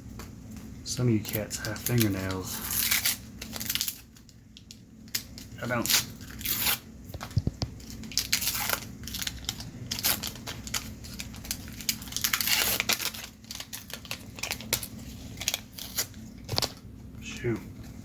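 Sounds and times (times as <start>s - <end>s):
wax paper wrapper crinkling: 0.9s - 18.0s
paper tearing: 1.2s - 4.2s, 5.1s - 6.8s, 7.8s - 16.6s.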